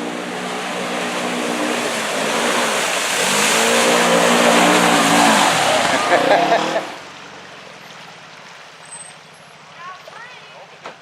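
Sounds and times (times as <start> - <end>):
utility vehicle engine revving: 0.0 - 7.0
water rushing and spraying: 0.0 - 10.5.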